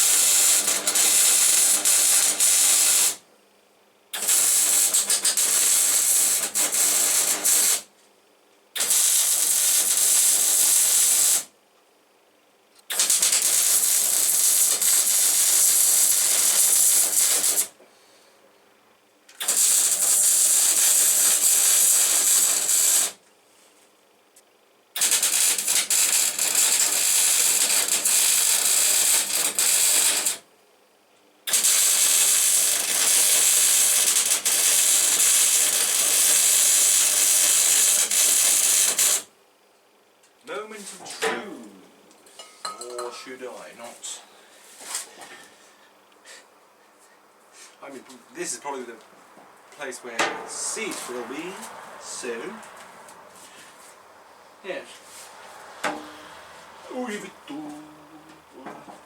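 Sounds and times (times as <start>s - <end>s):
welding arc crackling and hissing: 0.0s - 3.2s, 4.2s - 7.9s, 8.8s - 11.5s, 12.9s - 17.8s, 19.4s - 23.2s, 25.0s - 30.5s, 31.5s - 39.3s, 49.8s - 54.0s, 54.6s - 59.0s.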